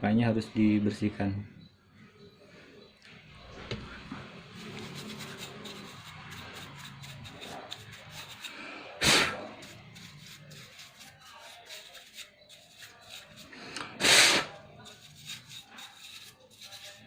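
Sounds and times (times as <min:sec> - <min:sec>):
scratchy rubbing and scraping: 0:04.3 - 0:17.0.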